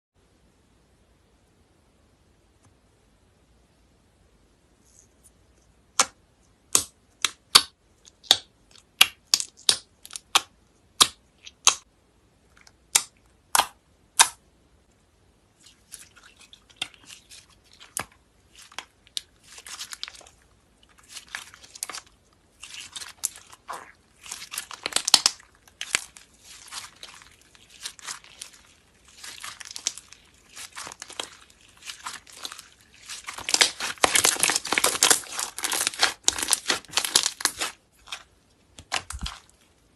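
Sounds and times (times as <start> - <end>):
slime crackling squishes: 15.6 - 39.9
slime popping: 22.6 - 39.5.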